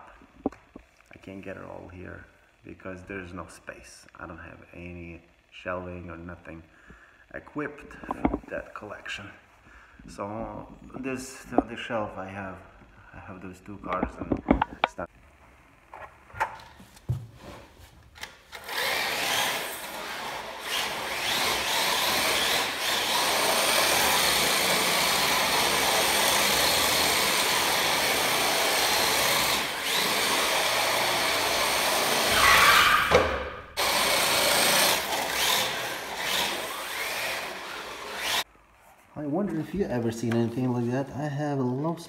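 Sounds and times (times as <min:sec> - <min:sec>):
small electric motor running: 0:18.6 - 0:33.1, 0:33.8 - 0:38.4.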